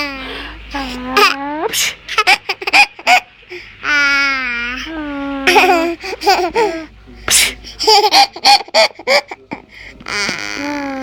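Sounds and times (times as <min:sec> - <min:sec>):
baby laughing: 0:02.1 - 0:06.9, 0:07.8 - 0:11.0.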